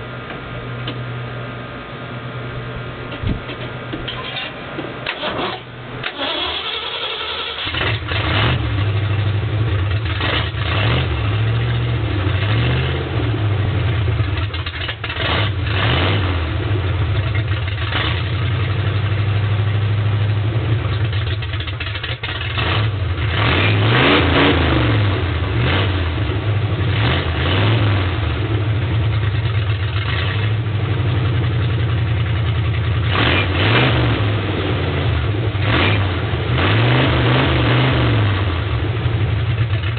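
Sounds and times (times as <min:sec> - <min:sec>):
engine starting and revving: 0:04.1 - 0:13.6, 0:14.2 - 0:18.7, 0:20.9 - 0:28.6, 0:33.0 - 0:39.9.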